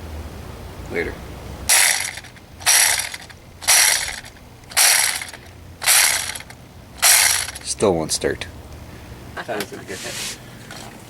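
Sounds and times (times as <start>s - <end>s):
chainsaw starter cord pulls: 1.7s - 7.7s.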